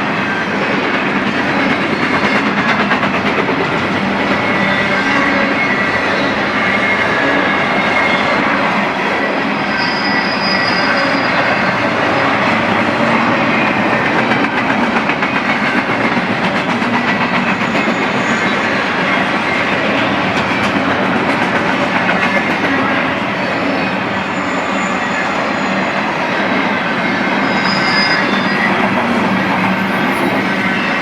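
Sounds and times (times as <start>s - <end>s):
train wheels clicking over rail joints: 0.8s - 4.6s, 13.7s - 24.8s
faint wheel squeals: 4.4s - 11.8s, 17.5s - 20.1s, 22.2s - 31.0s.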